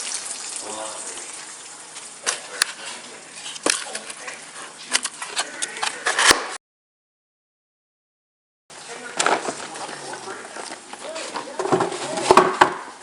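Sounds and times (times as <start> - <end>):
egg sizzling in a pan: 0.0 - 2.5.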